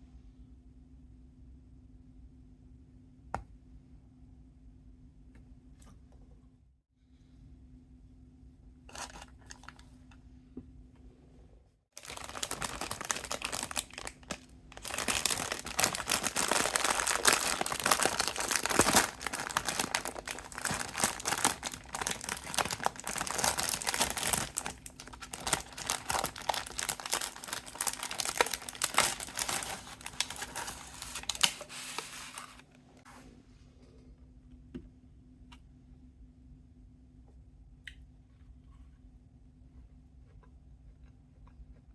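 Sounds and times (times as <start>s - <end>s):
plastic packaging crinkling: 12.0s - 32.7s.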